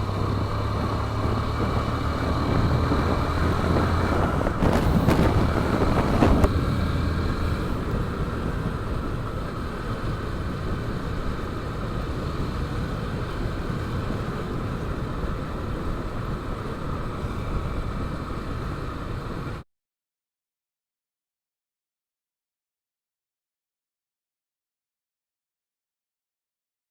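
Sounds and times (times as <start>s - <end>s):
motorcycle engine: 0.0s - 19.3s
wind and road noise: 0.0s - 19.6s.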